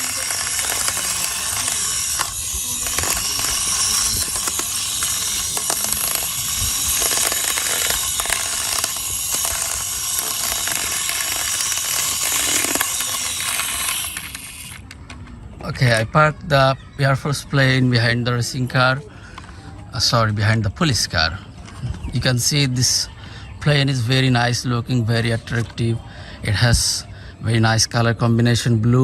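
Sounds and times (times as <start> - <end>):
toy wheels rattling on wall: 0.0 - 15.0.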